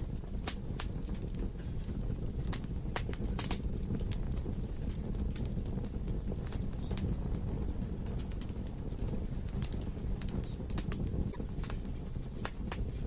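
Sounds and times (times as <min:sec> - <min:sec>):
fire rumbling: 0:00.0 - 0:13.0
wood crackling and popping: 0:00.0 - 0:13.0.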